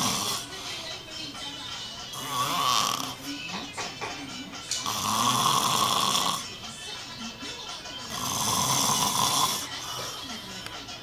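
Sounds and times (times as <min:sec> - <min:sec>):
man snoring loudly: 0:00.0 - 0:00.4, 0:02.1 - 0:03.2, 0:04.8 - 0:06.4, 0:08.1 - 0:09.7.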